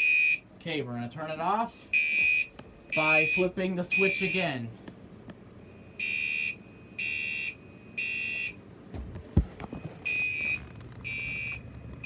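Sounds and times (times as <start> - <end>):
fire alarm horn beeping: 0.0 - 0.4, 1.9 - 4.6, 5.7 - 8.6.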